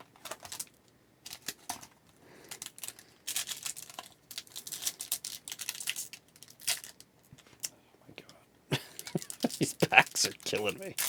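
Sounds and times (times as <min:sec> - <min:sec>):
foil wrapper crinkling: 0:00.2 - 0:07.7, 0:09.0 - 0:11.0
cards clicking: 0:09.0 - 0:10.9.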